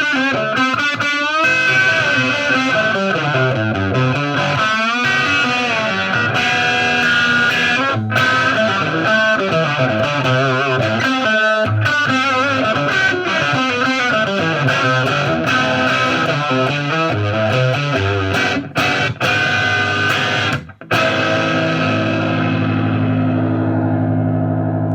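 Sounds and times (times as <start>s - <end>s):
electric guitar rock chords: 0.0s - 24.9s.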